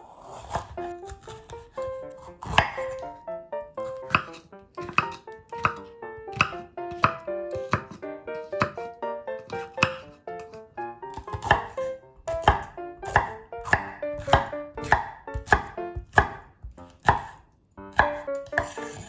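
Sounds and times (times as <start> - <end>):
knife chopping on cutting board: 0.3 - 3.2, 3.8 - 19.0.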